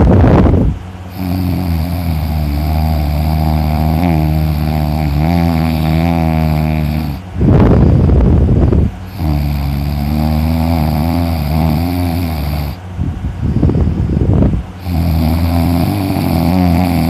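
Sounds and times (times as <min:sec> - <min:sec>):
person snoring: 0:01.1 - 0:07.2, 0:09.0 - 0:12.8, 0:14.8 - 0:17.0.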